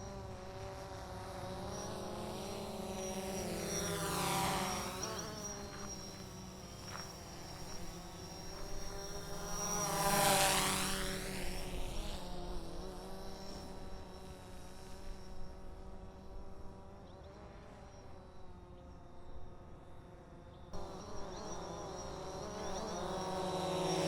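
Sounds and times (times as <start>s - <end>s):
drone propellers buzzing: 20.8s - 24.0s.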